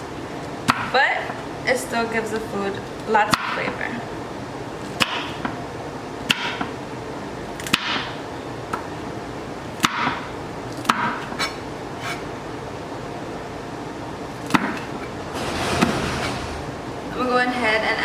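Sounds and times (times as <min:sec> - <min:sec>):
knife scraping: 0:11.4 - 0:12.3.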